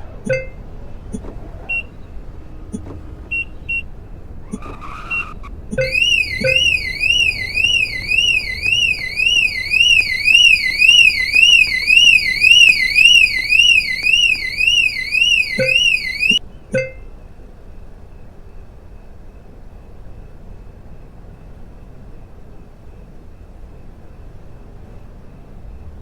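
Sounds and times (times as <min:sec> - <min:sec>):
electronic alarm warbling: 0:00.3 - 0:00.6, 0:05.8 - 0:17.0.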